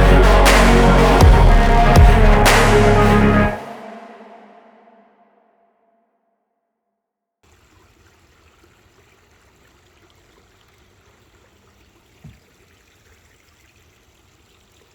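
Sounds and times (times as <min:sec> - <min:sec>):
music: 0:00.0 - 0:04.3
running water: 0:07.4 - 0:14.9.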